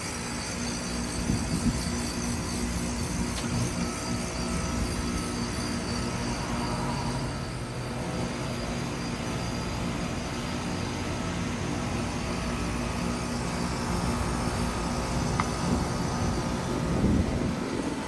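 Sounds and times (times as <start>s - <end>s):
heat pump units humming: 0.0s - 18.0s.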